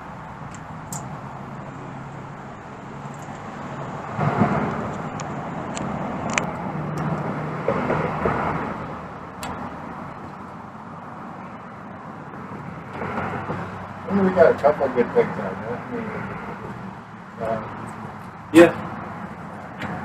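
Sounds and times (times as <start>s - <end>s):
road vehicle hum: 0.0s - 20.0s.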